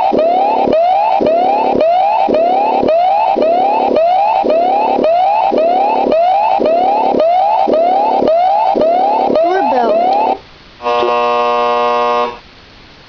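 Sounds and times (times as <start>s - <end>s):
electronic alarm whoop: 0.0s - 10.4s
steady buzzing tone: 0.0s - 12.5s.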